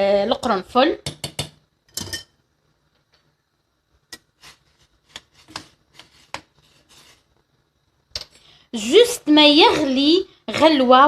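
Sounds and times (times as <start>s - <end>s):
utensil tapping cooking pot: 1.0s - 2.3s.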